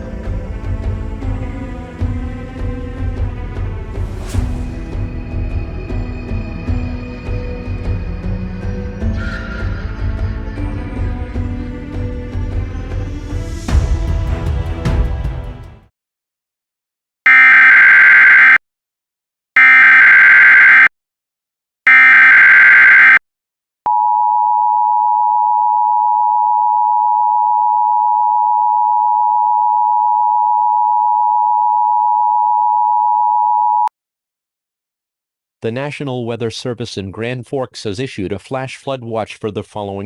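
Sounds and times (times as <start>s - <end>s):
buzzing data bursts: 21.9s - 23.2s
two-tone attention signal: 21.9s - 23.2s.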